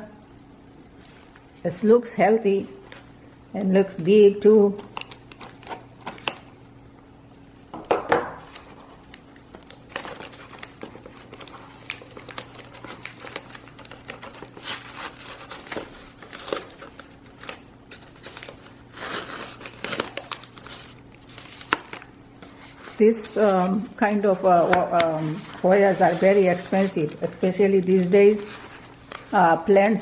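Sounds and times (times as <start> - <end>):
packaging crinkling and rustling: 4.8 - 6.6, 8.3 - 29.8.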